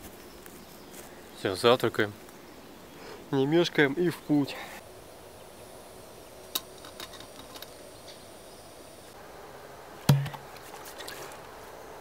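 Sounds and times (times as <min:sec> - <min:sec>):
sharp loud knock: 0:10.1 - 0:10.4.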